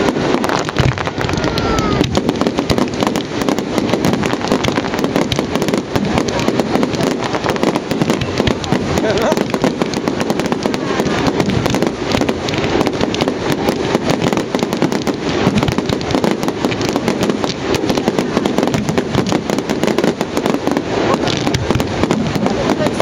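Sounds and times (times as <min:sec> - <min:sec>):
fireworks crackling and banging: 0:00.0 - 0:23.0.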